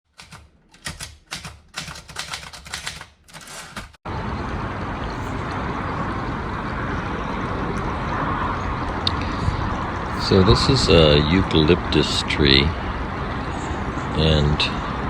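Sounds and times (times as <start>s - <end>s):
quick clattering clicks: 0.1s - 4.0s
steady rushing outdoor noise: 4.1s - 15.0s.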